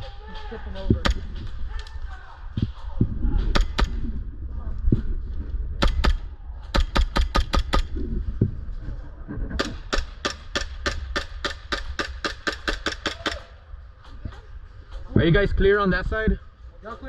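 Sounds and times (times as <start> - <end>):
airsoft guns firing: 5.8 - 7.9, 9.6 - 13.5.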